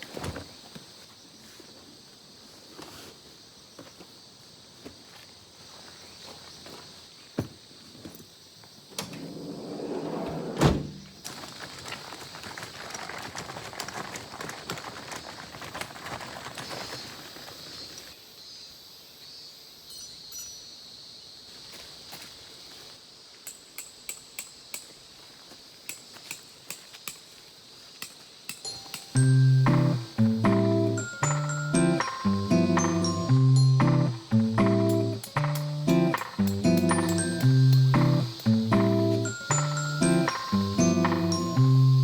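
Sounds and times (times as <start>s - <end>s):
insects and cicadas chorus: 0.0s - 42.0s
rustling: 9.0s - 18.1s.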